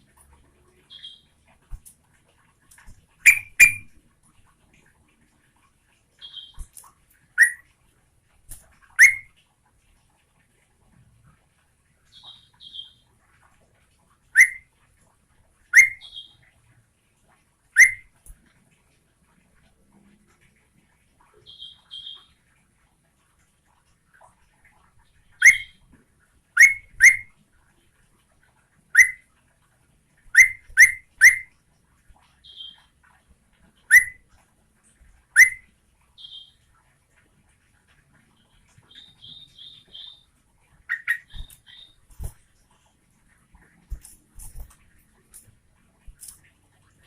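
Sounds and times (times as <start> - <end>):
soft high bird chirps: 0.7 - 1.4, 2.8 - 4.0, 6.2 - 7.7, 8.9 - 9.4, 12.1 - 13.1, 14.3 - 14.7, 15.7 - 16.5, 17.8 - 18.2, 21.3 - 22.4, 25.2 - 25.9, 26.6 - 27.4, 28.9 - 29.3, 30.3 - 31.5, 32.4 - 33.0, 33.8 - 34.3, 35.3 - 36.7, 38.4 - 42.4
bird whistling sharp notes: 3.2 - 3.9, 7.4 - 7.6, 9.0 - 9.3, 14.4 - 14.6, 15.8 - 16.3, 17.8 - 18.0, 25.4 - 25.8, 26.6 - 27.3, 29.0 - 29.2, 30.4 - 31.5, 33.9 - 34.2, 35.4 - 35.6.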